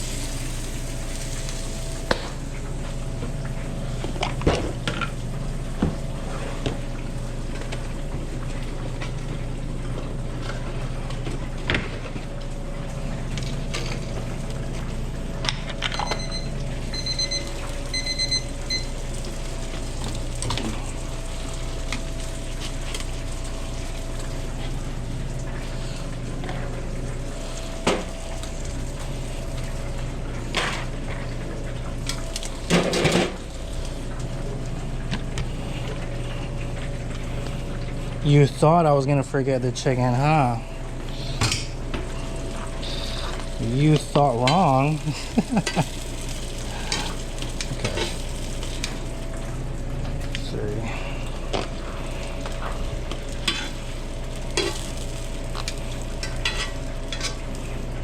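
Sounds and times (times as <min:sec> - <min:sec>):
kitchen equipment hum: 0:00.0 - 0:58.0
utensils clicking and clattering: 0:54.5 - 0:55.0.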